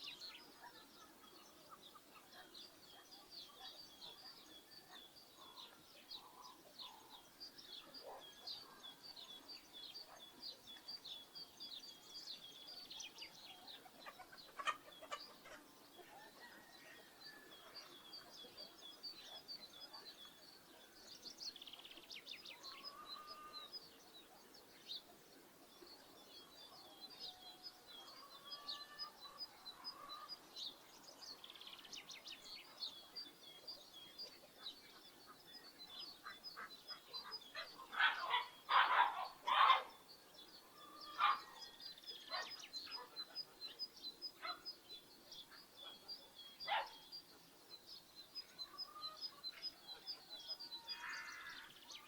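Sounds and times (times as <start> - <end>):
small birds chirping: 0.0 - 52.0.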